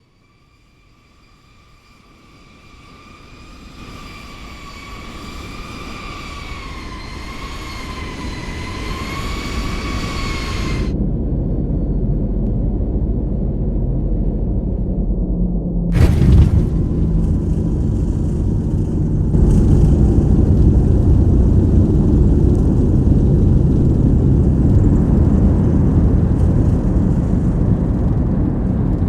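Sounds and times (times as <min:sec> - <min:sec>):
jet engine whine: 0:00.0 - 0:29.0
jet aircraft rumble: 0:07.3 - 0:29.0.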